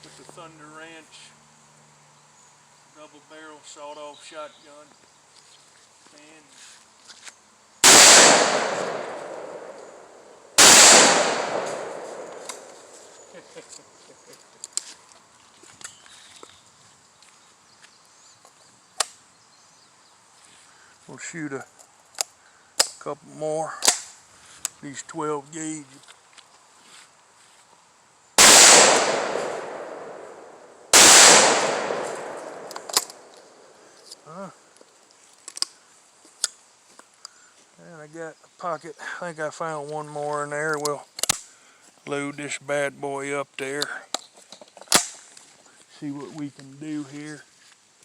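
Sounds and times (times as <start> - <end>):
shotgun blasts echoing: 7.8 - 12.9, 28.4 - 33.3.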